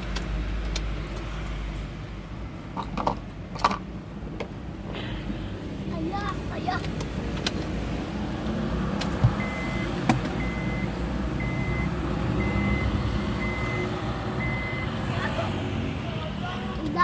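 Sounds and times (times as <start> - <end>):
electronic beep: 9.4 - 14.9.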